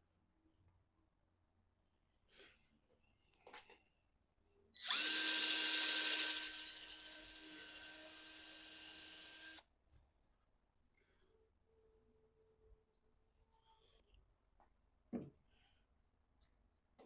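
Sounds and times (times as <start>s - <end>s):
power drill boring into wood: 4.8s - 9.6s.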